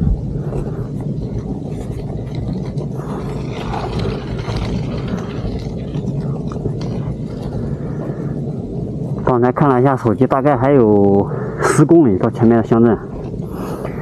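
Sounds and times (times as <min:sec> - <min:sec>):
faint scraping: 0:00.0 - 0:14.0
wind buffeting microphone: 0:00.0 - 0:14.0.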